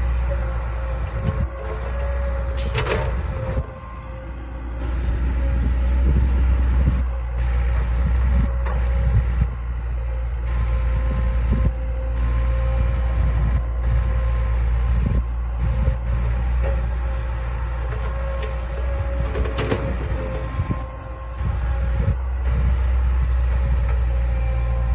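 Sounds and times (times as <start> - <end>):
excavator engine running: 0.0 - 24.9
metal knocks and clanks: 1.3 - 3.8, 17.8 - 20.9.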